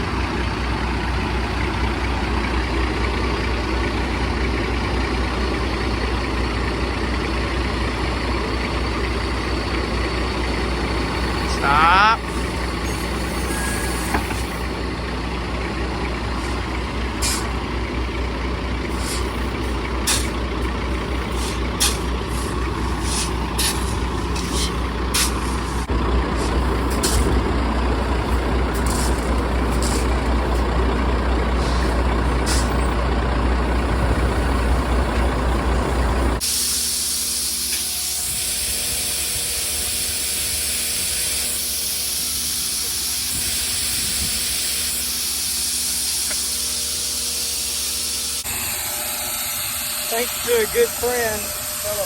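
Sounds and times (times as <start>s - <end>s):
diesel farm machinery rumble: 0.0s - 52.0s
loud rushing hiss: 36.4s - 52.0s.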